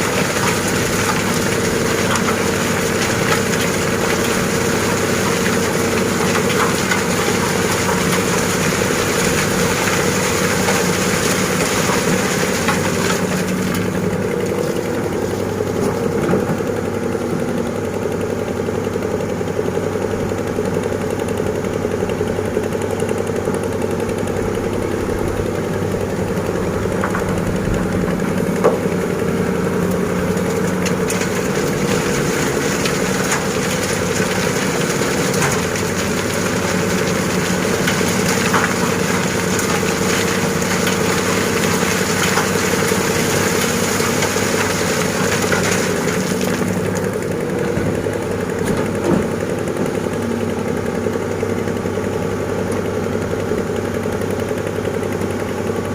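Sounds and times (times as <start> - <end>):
sand loading into truck: 0.0 - 16.9, 25.1 - 50.2
heavy diesel engines running: 0.0 - 55.9.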